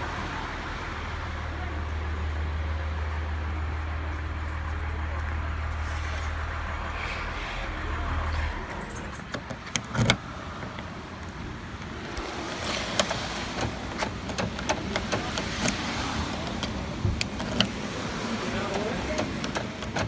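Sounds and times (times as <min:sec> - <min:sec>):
key clicking in door lock: 0:09.1 - 0:10.8, 0:12.5 - 0:17.8, 0:18.7 - 0:20.0.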